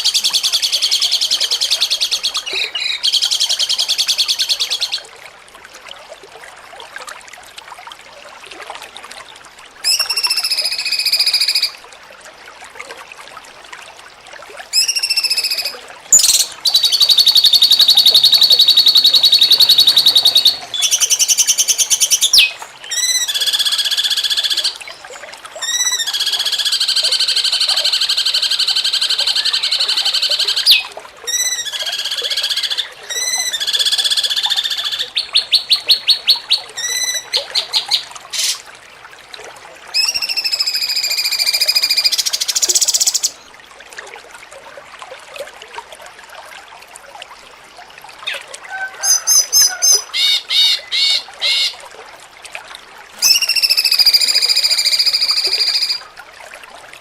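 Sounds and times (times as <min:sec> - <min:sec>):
bird singing rapid rattling trills: 0:16.2 - 0:23.2.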